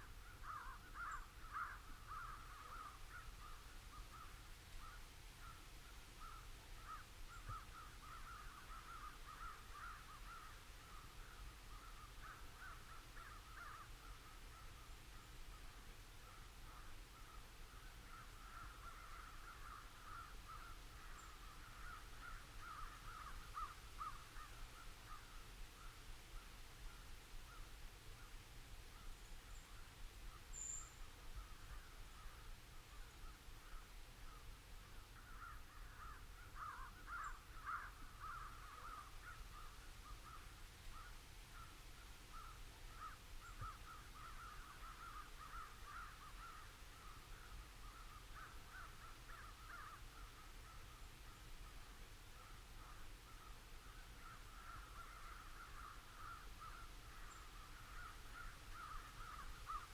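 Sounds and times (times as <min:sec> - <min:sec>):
crows cawing: 0:00.2 - 0:05.6, 0:06.2 - 0:14.6, 0:18.1 - 0:25.4, 0:35.2 - 0:41.7, 0:42.3 - 0:50.4, 0:52.8 - 0:59.9
small bird chirp: 0:29.1 - 0:31.1.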